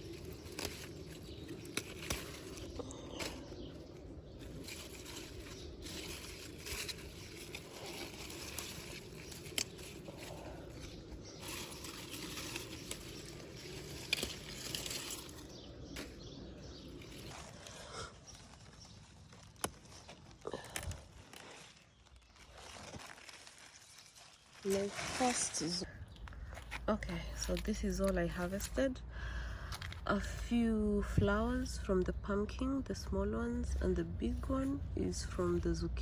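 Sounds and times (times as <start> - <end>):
stems snapping: 0.0 - 25.4
leaves and plants rustling: 0.0 - 29.0, 29.8 - 36.0.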